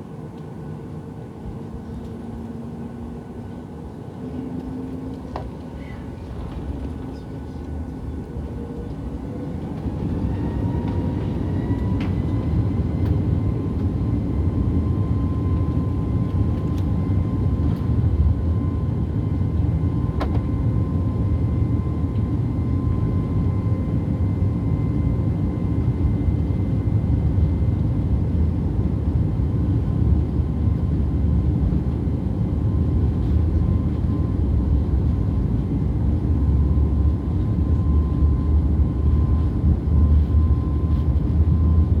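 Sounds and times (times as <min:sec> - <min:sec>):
jet engine whine: 0:00.0 - 0:42.0
jet engine roar: 0:09.0 - 0:30.7.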